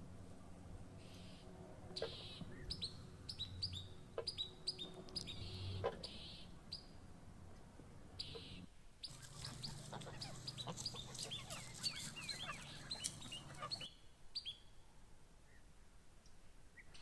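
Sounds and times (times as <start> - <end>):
birds chirping: 9.1 - 13.9
low steady hum: 9.1 - 13.9.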